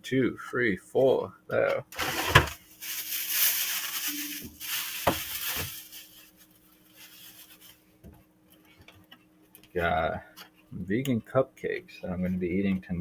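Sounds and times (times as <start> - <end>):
food containers rubbing: 1.9 - 7.9.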